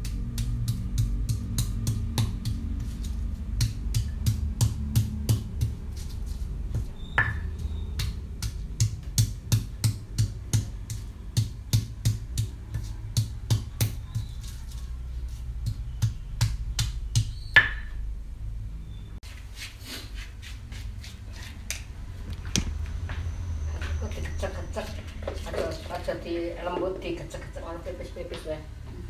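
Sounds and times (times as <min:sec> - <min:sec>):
sharp knocks of kitchen work: 0:00.0 - 0:02.9, 0:03.5 - 0:06.0, 0:06.6 - 0:14.4, 0:15.5 - 0:18.0
quiet background music: 0:00.0 - 0:17.9.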